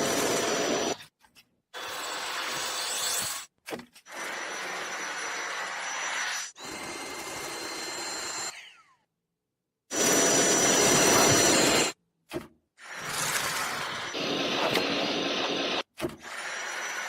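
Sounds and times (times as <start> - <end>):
stick vacuum cleaner whining: 0.0 - 1.0, 9.9 - 12.0, 12.8 - 17.0.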